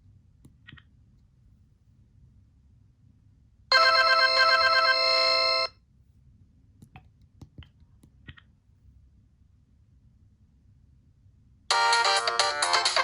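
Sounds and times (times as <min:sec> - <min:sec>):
polyphonic phone ringtone: 0:03.7 - 0:05.7, 0:11.7 - 0:13.0.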